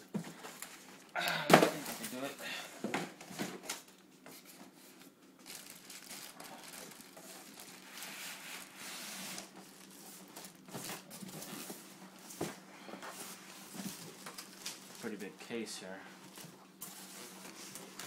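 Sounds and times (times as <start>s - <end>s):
cardboard rustling and crinkling: 2.9s - 15.3s, 16.2s - 18.0s.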